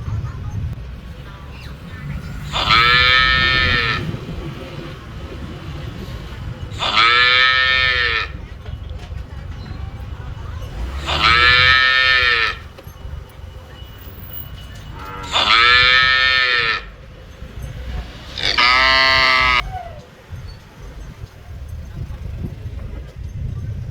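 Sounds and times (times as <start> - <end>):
cow mooing: 2.4 - 4.2, 6.8 - 8.4, 10.8 - 12.7, 14.9 - 17.0, 18.4 - 19.6.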